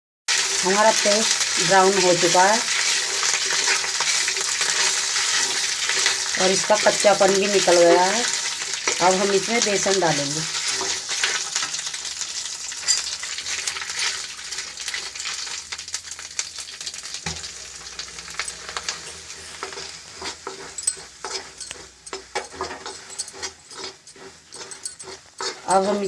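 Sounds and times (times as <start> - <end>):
paste sizzling in a pan: 0.3 - 26.0
spoon scraping and tapping pan: 2.7 - 9.1, 12.7 - 14.2, 18.3 - 26.0.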